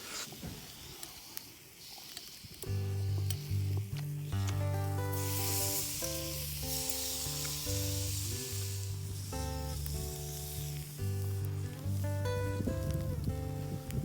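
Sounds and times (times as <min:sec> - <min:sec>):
steady high hiss: 0:00.0 - 0:14.0
background music with bass chords: 0:02.7 - 0:14.0.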